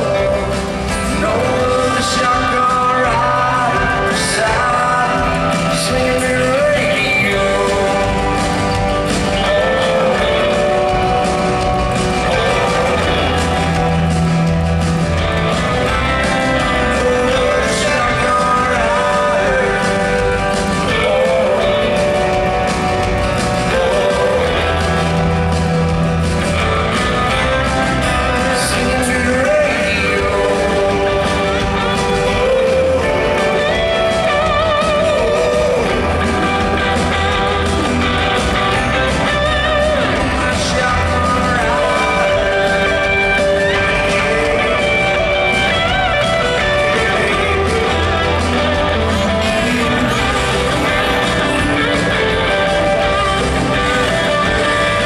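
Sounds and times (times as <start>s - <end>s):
country band playing ballad: 0.0s - 55.0s
man singing: 0.0s - 55.0s.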